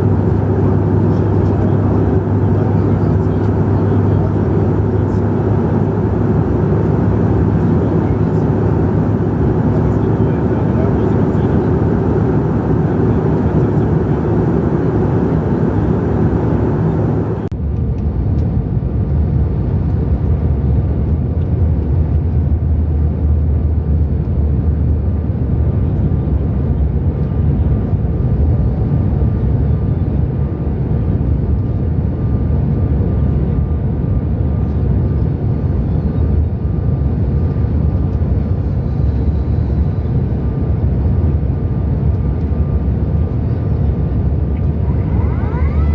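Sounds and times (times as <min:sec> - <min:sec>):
jet engine drone: 0:00.0 - 0:45.9
cabin air rushing: 0:12.0 - 0:17.5.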